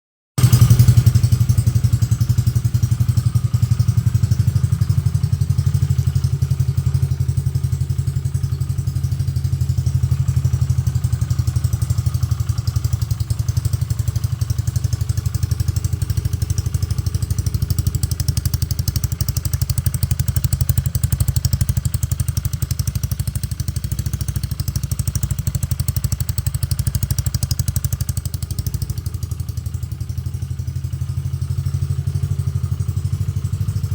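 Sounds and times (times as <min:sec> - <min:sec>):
scooter engine idling: 0:00.4 - 0:33.9.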